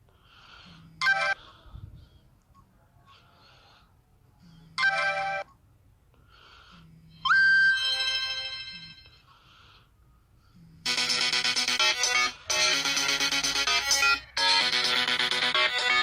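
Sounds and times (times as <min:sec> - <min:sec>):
bright rising phone tone: 0:07.2 - 0:09.2.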